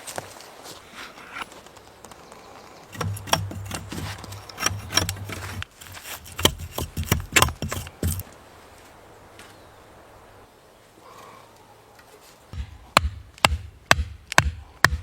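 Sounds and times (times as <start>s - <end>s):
sharp knocks and clatter: 2.9s - 8.3s.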